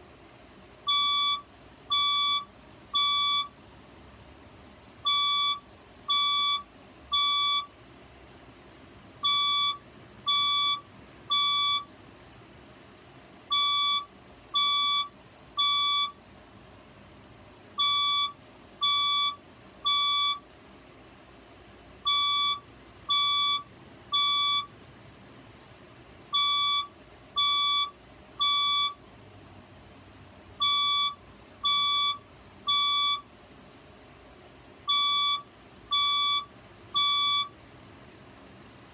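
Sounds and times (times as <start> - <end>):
fire alarm beeps: 0.9 - 3.6, 5.0 - 7.8, 9.2 - 11.9, 13.5 - 16.2, 17.8 - 20.5, 22.0 - 24.7, 26.3 - 29.0, 30.6 - 33.3, 34.9 - 37.6.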